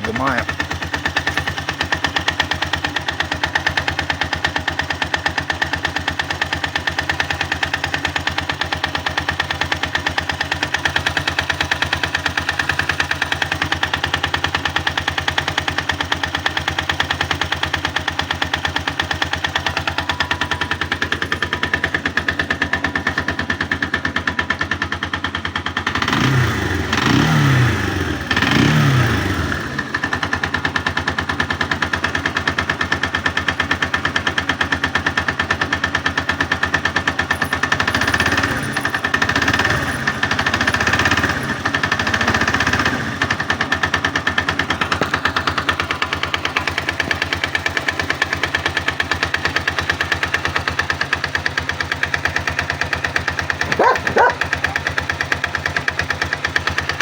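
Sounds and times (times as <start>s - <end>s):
engine running with knocking rattle: 0.0s - 57.0s
engine revving: 25.9s - 30.2s, 37.3s - 43.9s, 53.6s - 55.2s.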